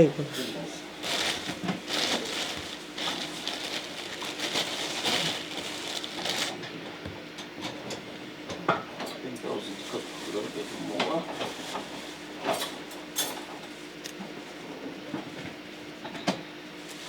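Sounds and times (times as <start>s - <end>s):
faint steady hum: 0.0s - 10.2s
packaging rustling and crinkling: 1.0s - 6.7s.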